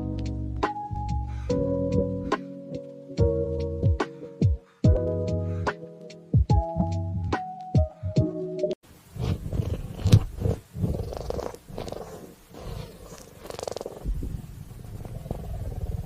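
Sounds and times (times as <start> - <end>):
cat purring: 9.2 - 16.0.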